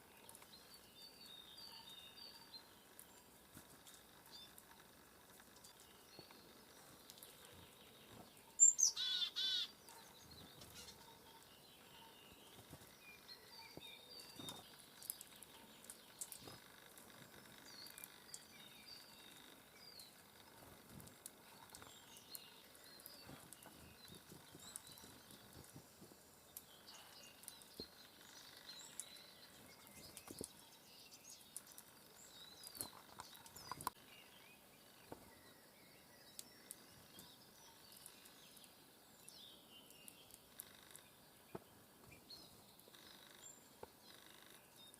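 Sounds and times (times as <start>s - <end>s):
faint bird chirps: 0.0s - 25.8s, 26.5s - 44.9s
songbird calling: 8.5s - 20.4s
small clicks: 14.3s - 18.6s.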